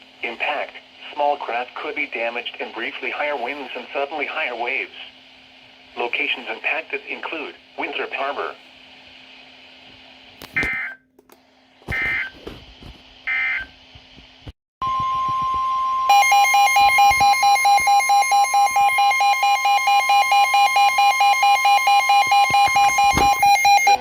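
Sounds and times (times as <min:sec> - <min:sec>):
harsh pulsing alarm: 0:11.9 - 0:12.4, 0:14.8 - 0:24.0.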